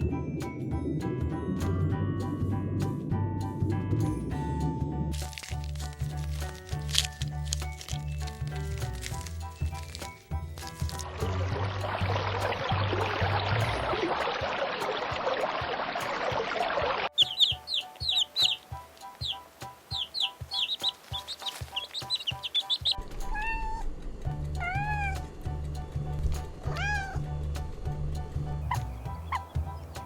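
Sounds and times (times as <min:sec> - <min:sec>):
background music with steady beat: 0:17.2 - 0:23.4, 0:24.0 - 0:30.0
high falling chirps: 0:17.2 - 0:23.5
drawn-out animal calls: 0:17.2 - 0:23.9, 0:28.7 - 0:29.9.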